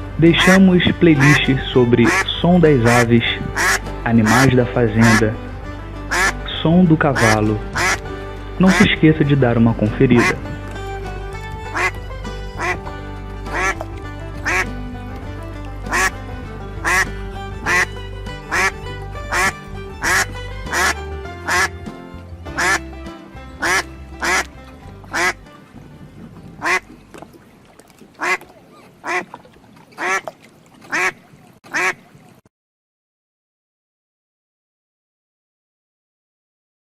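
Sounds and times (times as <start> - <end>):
low background music: 0.0 - 28.4
duck quacking: 0.3 - 0.6, 1.2 - 5.4, 6.1 - 6.4, 7.1 - 9.0, 10.1 - 10.5, 11.7 - 12.9, 13.5 - 14.7, 15.9 - 21.8, 22.5 - 22.9, 23.6 - 24.5, 25.1 - 25.4, 26.6 - 26.8, 28.2 - 29.3, 30.0 - 30.3, 30.9 - 32.0.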